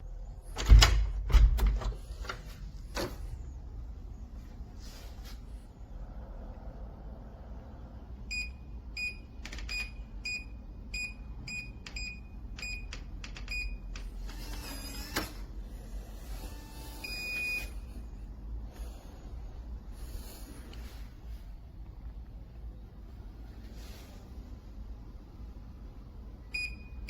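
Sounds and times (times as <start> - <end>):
keypad beeping: 8.3 - 14.0
deadbolt motor whir: 14.2 - 15.4.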